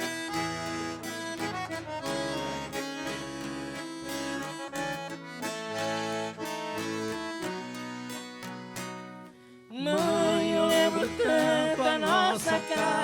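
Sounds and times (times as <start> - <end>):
accordion melody: 0.0 - 13.0
strummed and plucked guitar: 0.0 - 13.0.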